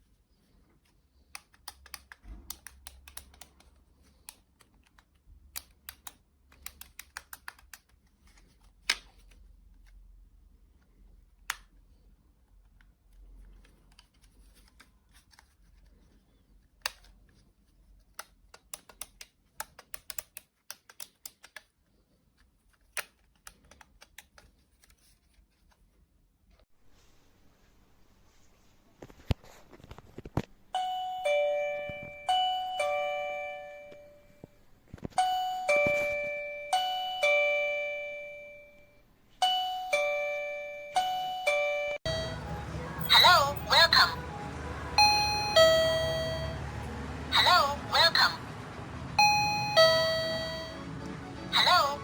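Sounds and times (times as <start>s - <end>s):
small plastic parts clicking: 1.3s - 8.0s, 18.0s - 25.0s.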